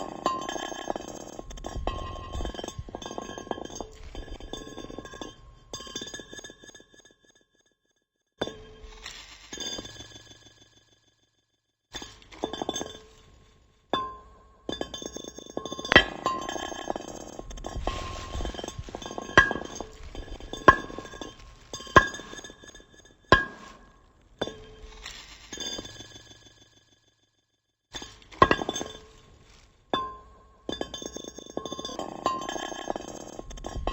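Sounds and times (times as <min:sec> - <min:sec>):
glass tapping and clinking: 0:00.0 - 0:06.5, 0:12.4 - 0:13.2, 0:14.0 - 0:24.8, 0:28.0 - 0:29.3, 0:30.0 - 0:33.9.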